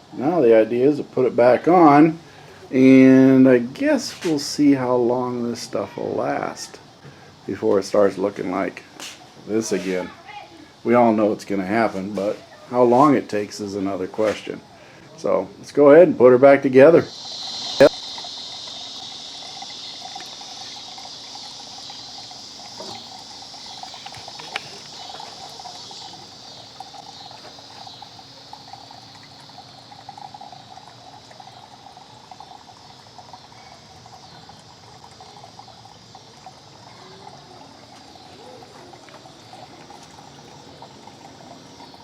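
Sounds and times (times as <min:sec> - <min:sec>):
high-pitched insect chorus: 0:00.0 - 0:42.0
lower insect trilling: 0:16.5 - 0:42.0.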